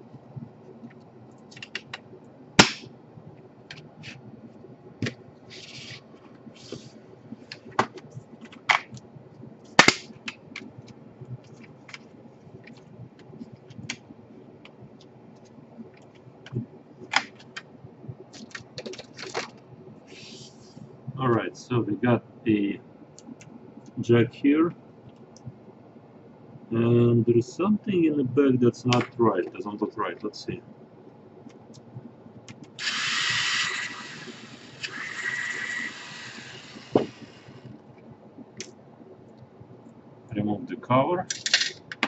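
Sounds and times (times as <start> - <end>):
loud plastic cracks: 2.6 - 2.9, 9.8 - 10.7, 17.1 - 17.6.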